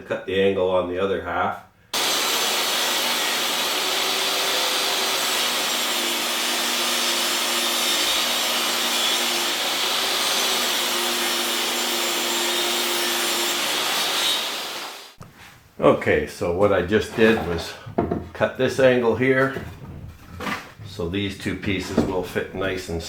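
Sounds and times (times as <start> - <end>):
table saw cutting wood: 2.0 - 15.2, 21.8 - 22.9.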